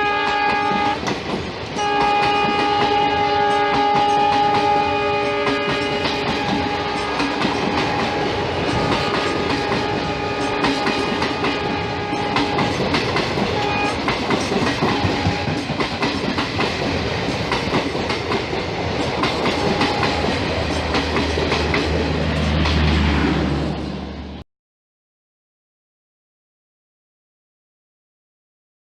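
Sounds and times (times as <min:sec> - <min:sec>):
locomotive air horn: 0:00.0 - 0:01.0, 0:01.8 - 0:12.8, 0:13.5 - 0:14.0, 0:14.8 - 0:15.7
train wheels clattering on rails: 0:00.0 - 0:23.7.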